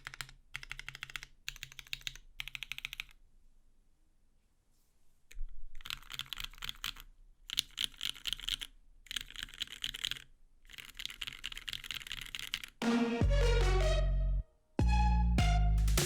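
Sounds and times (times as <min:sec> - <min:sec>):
fast typing on mechanical keyboard: 0:00.0 - 0:03.2, 0:05.8 - 0:12.8.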